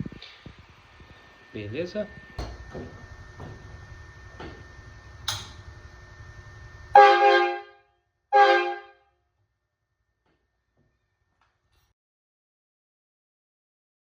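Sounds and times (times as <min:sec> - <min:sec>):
air horn blasts: 0:06.9 - 0:09.0.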